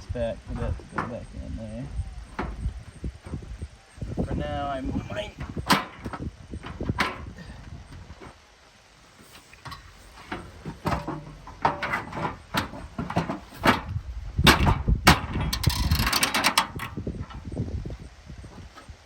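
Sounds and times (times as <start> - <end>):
metal parts clanking and rattling: 9.6 - 17.5.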